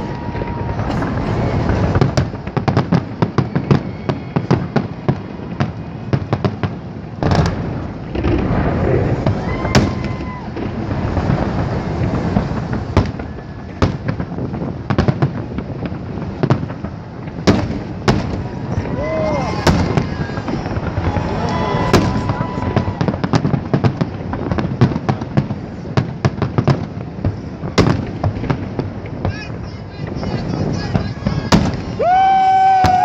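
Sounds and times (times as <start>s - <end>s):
firework whistle: 0.0s - 14.3s, 17.5s - 24.1s, 29.2s - 33.0s
fireworks bangs and crackling: 0.0s - 33.0s.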